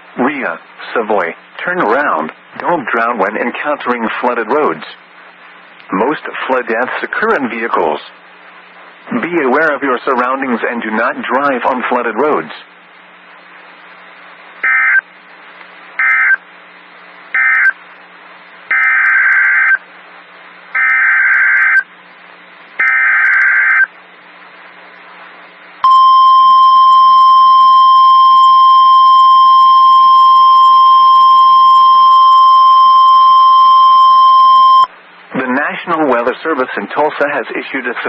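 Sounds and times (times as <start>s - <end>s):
radio data bursts: 13.8s - 15.2s, 16.0s - 16.5s, 17.2s - 19.9s, 22.7s - 34.9s
steady warning alarm tone: 20.8s - 21.8s, 25.8s - 34.9s.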